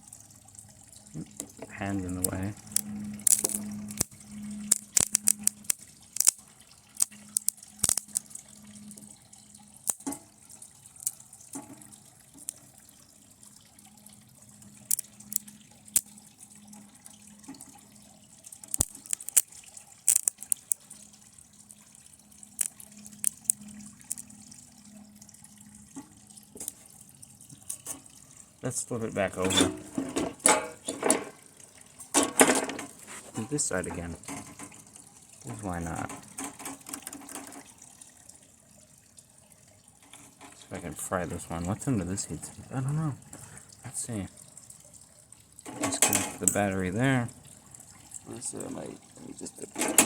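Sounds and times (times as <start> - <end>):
sparks crackling: 3.2 - 6.4, 7.4 - 8.2, 18.7 - 19.5, 20.1 - 20.8.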